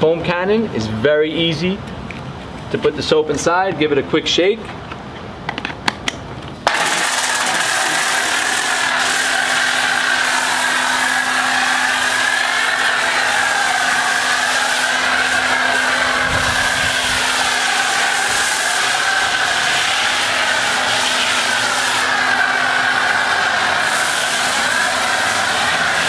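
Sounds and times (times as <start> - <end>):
pressure washer spraying: 6.6 - 26.0
pressure washer whine and hum: 6.6 - 26.0.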